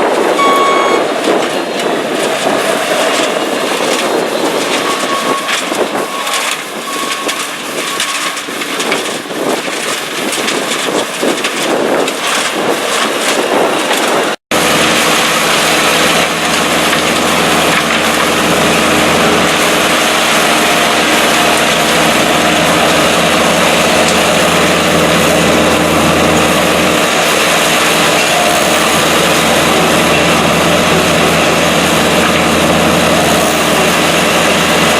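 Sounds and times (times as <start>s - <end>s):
low engine drone: 0.0s - 7.9s.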